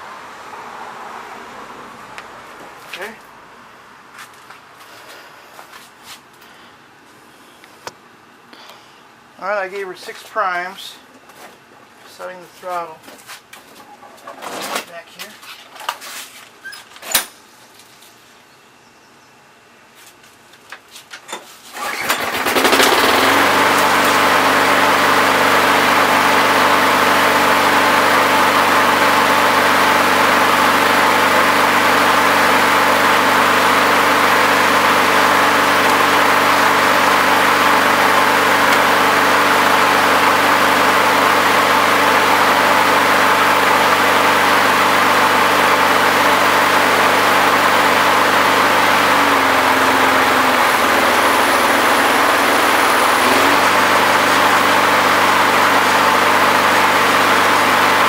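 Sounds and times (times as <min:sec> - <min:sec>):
lawn mower pull-start: 0:21.2 - 0:58.0
lawn mower engine running: 0:21.7 - 0:58.0.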